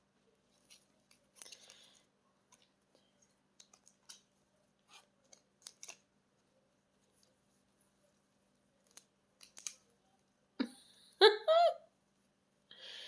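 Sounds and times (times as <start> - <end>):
light clicks of paper and plastic: 0.5 - 7.9, 8.8 - 10.0.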